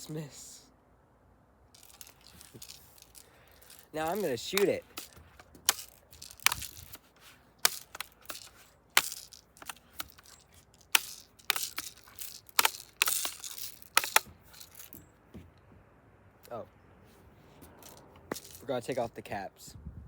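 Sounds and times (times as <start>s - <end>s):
bb gun clicks and knocks: 1.8s - 15.7s.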